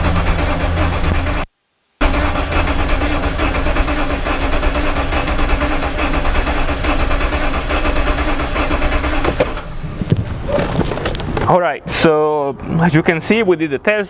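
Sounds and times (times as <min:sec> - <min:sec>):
engine cranking by starter: 0:00.0 - 0:11.5.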